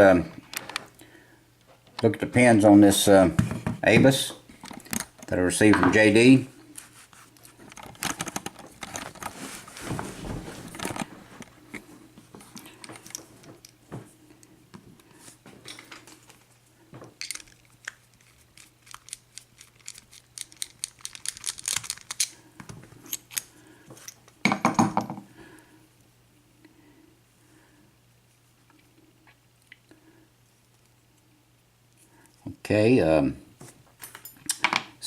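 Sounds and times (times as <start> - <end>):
padlock and metal tools clicking: 17.2 - 17.7, 18.6 - 22.3.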